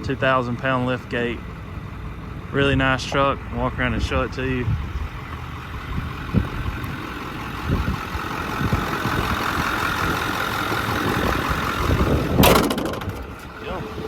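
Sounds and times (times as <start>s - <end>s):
truck engine idling: 0.0s - 14.0s
irregular low thumps: 3.1s - 9.6s.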